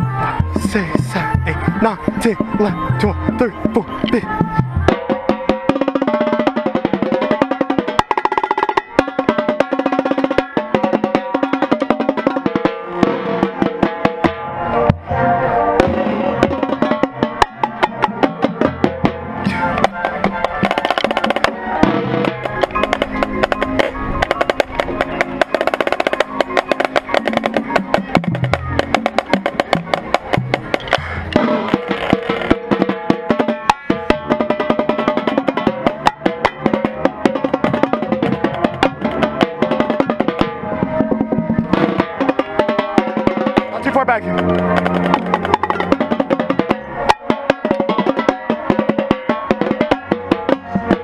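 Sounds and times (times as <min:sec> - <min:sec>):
brass and woodwinds chords: 0:00.0 - 0:07.7, 0:08.7 - 0:31.8, 0:35.3 - 0:48.6
snare and bass drums beat: 0:00.0 - 0:14.5, 0:15.8 - 0:51.0.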